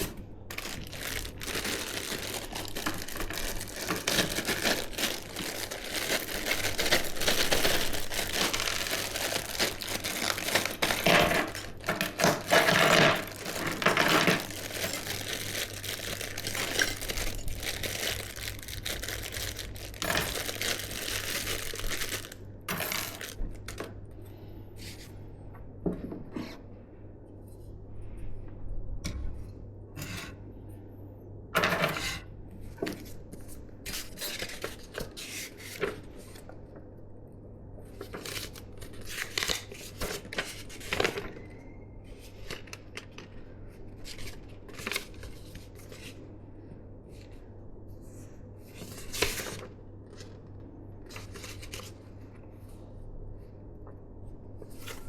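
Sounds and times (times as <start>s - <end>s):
packaging rustling: 0.0s - 23.8s.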